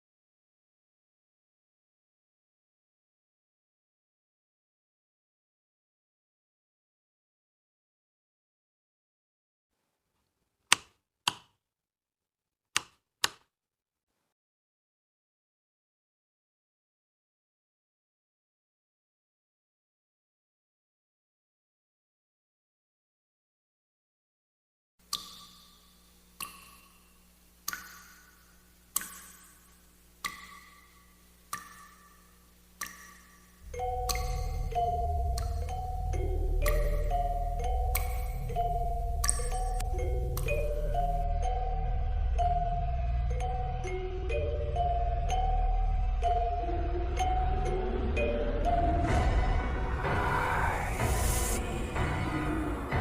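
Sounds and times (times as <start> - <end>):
mallet percussion melody: 33.6 - 41.4.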